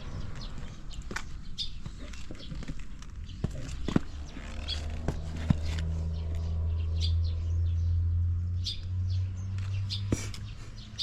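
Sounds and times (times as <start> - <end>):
small birds chirping: 0.0 - 11.0
motorcycle engine running: 3.3 - 6.4.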